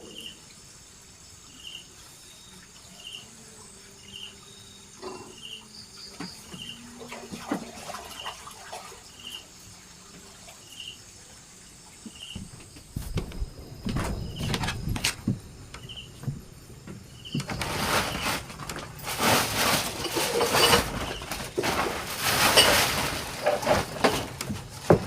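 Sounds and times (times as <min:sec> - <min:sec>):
insect chirp: 0:00.0 - 0:25.0
insects trilling: 0:00.0 - 0:25.0
loud rustling: 0:12.4 - 0:25.0.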